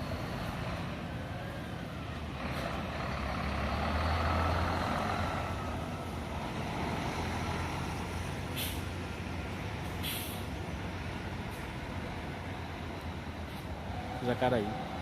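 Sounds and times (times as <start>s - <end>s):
bus diesel engine running: 0.0s - 15.0s
air brake hiss: 8.5s - 8.9s, 10.0s - 10.5s.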